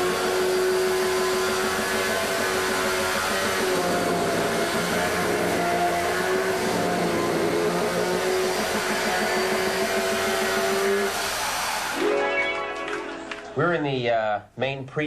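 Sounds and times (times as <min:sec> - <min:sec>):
chainsaw engine at high revs: 0:00.0 - 0:12.0.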